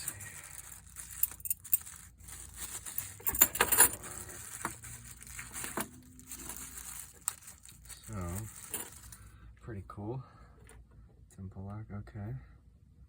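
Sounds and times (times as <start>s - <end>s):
keys clinking and rattling: 0.0s - 9.3s.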